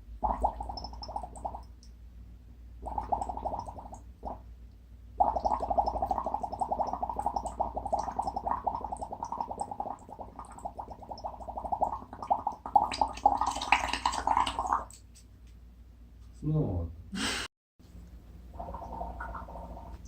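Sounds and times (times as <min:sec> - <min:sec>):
wet gurgling bubbles: 0:00.0 - 0:01.7, 0:02.8 - 0:04.4, 0:05.2 - 0:15.0, 0:18.5 - 0:20.0.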